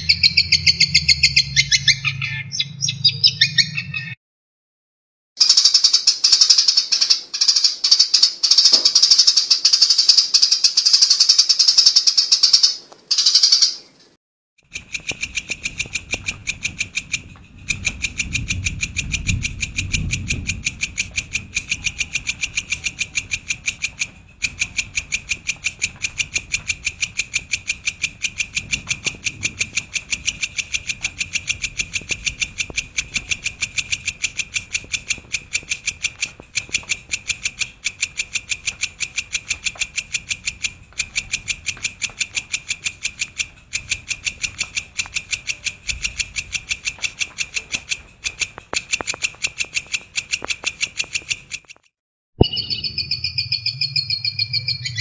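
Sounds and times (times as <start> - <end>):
low rumble: 0.0 - 4.0, 16.2 - 22.7
songbird rapid high notes: 0.0 - 4.1, 5.4 - 13.9, 52.4 - 55.0.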